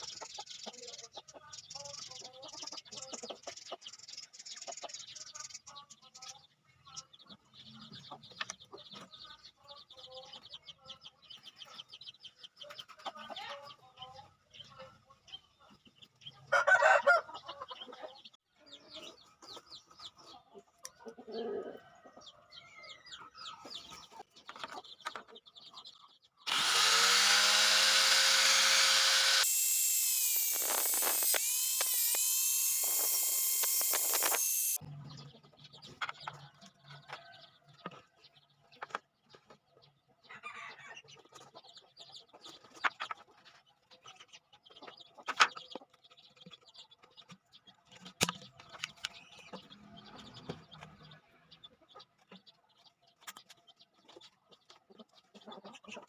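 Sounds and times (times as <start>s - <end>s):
chickens clucking and scratching: 0.0s - 26.5s, 34.8s - 56.0s
chicken squawk: 16.5s - 17.7s, 40.3s - 41.0s
electric drill running: 26.5s - 34.8s.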